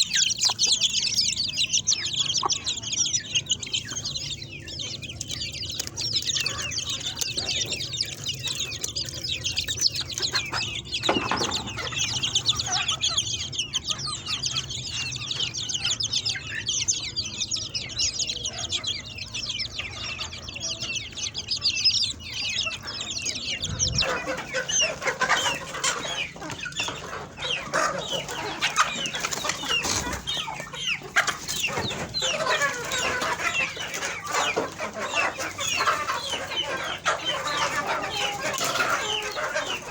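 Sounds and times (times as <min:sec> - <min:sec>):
chickens clucking: 0:00.0 - 0:39.9.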